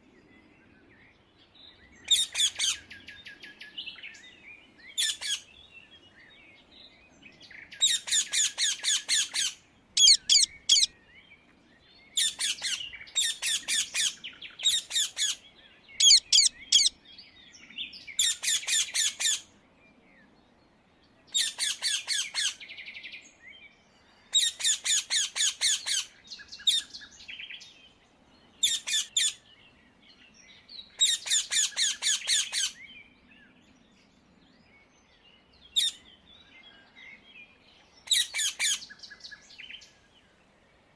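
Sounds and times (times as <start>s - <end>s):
parakeet screeching: 10.0s - 10.9s, 16.0s - 16.9s.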